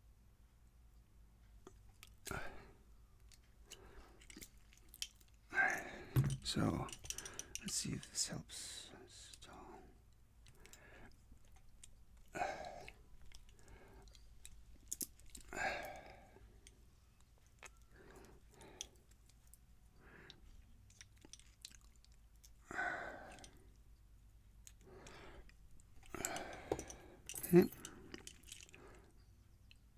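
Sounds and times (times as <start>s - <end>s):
metal clicks and scrapes of tool: 6.2s - 7.8s.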